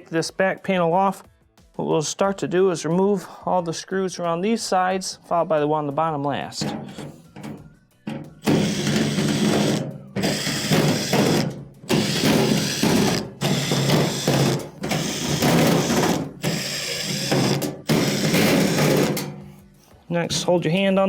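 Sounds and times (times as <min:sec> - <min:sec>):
power screwdriver backing out screws: 0:08.4 - 0:19.4.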